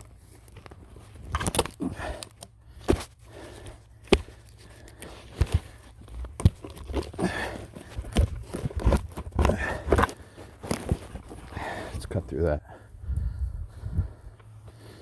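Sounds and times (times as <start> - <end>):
sharp wood strikes: 2.8 - 11.3
wood knocking and scraping: 4.1 - 11.6.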